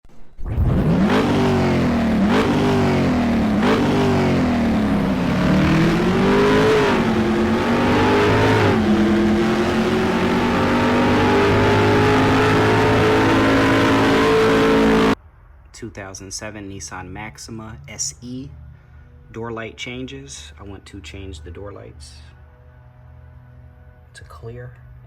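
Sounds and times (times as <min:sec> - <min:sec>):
car engine revving: 0:00.2 - 0:15.2.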